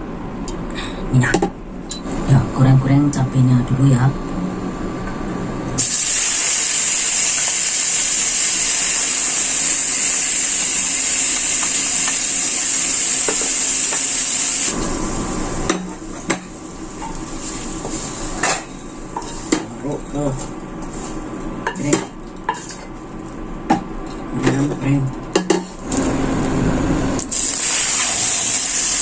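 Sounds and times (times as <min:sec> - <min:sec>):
chilies sizzling in hot oil: 0:05.8 - 0:19.6, 0:27.2 - 0:29.0.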